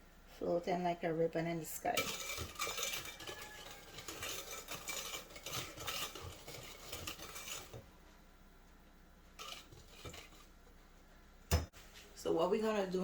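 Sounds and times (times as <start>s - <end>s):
whisk clicking against bowl: 2.0s - 7.8s, 9.4s - 10.5s.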